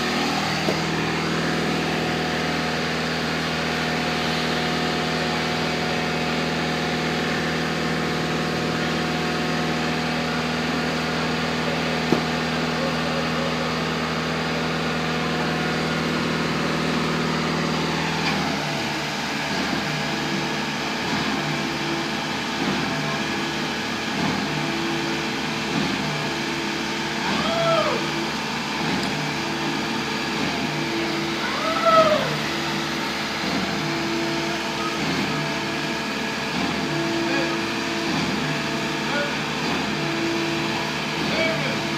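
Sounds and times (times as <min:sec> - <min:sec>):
engine running with hum: 0:00.0 - 0:41.9.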